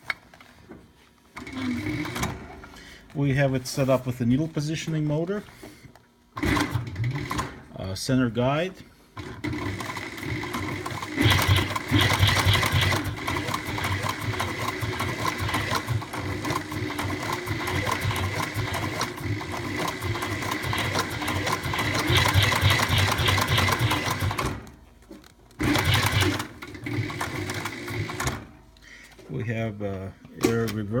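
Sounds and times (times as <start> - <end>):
sewing machine running: 1.4 - 2.4, 6.4 - 7.6, 9.2 - 24.7, 25.6 - 28.5.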